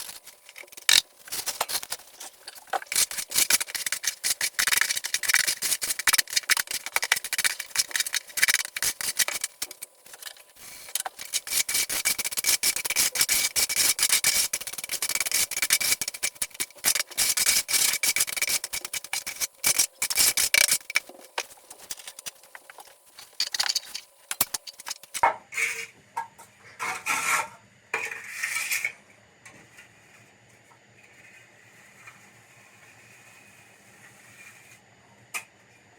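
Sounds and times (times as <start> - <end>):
hand tool scraping rough surface: 0.0 - 25.8.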